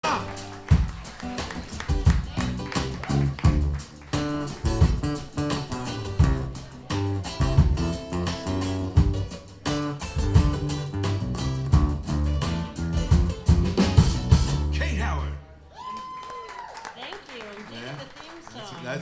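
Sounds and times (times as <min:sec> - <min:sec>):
live band guitar instrumental: 0:00.0 - 0:14.8.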